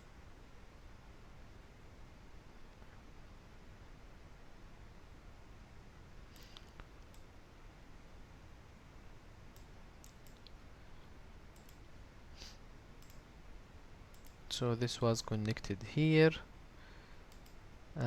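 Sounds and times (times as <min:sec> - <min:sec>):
computer mouse clicks: 0:06.3 - 0:07.3, 0:09.5 - 0:10.6, 0:11.5 - 0:12.0, 0:13.0 - 0:13.3, 0:14.1 - 0:14.4, 0:17.3 - 0:17.6.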